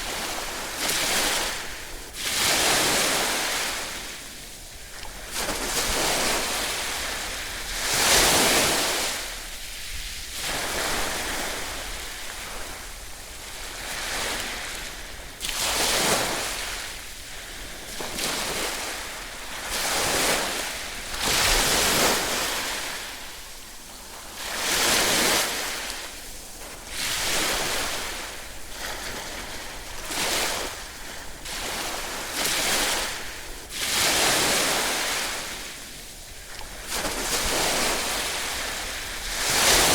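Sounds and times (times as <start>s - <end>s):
ocean waves breaking: 36.6s - 39.9s.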